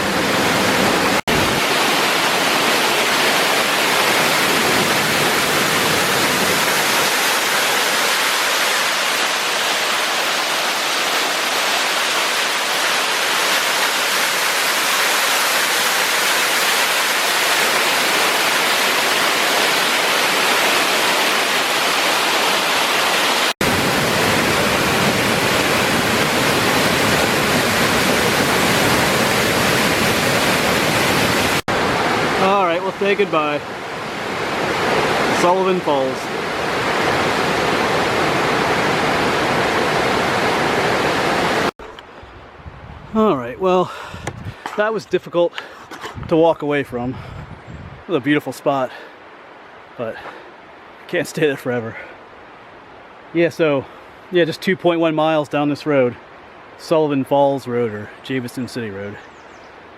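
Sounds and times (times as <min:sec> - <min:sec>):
waterfall pouring: 0:00.0 - 0:41.8.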